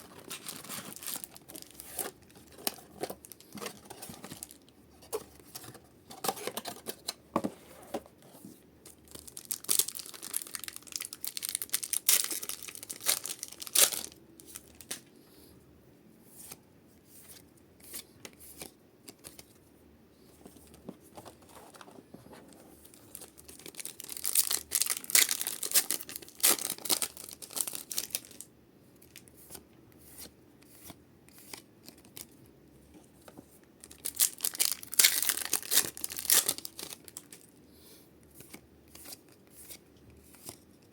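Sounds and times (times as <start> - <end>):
wrappers tearing and crinkling: 0.0 - 4.6, 9.1 - 15.0, 23.0 - 28.4, 33.9 - 37.5.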